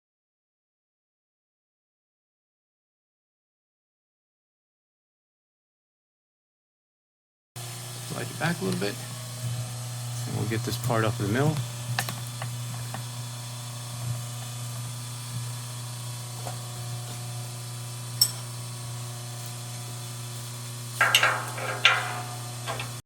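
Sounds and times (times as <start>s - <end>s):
steady low machine hum: 7.6s - 23.0s
short clatter: 21.0s - 23.0s.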